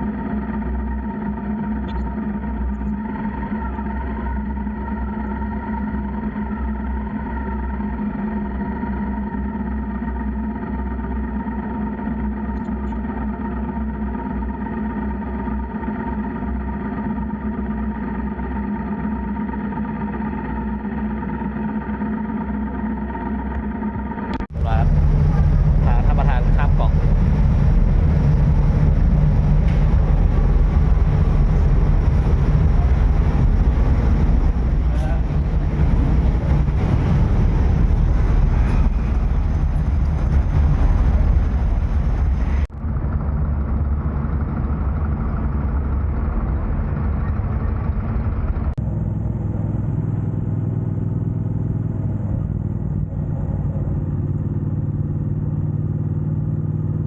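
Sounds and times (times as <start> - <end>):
motorcycle engine drone: 0.0 - 57.0
wind and road noise: 23.0 - 57.0.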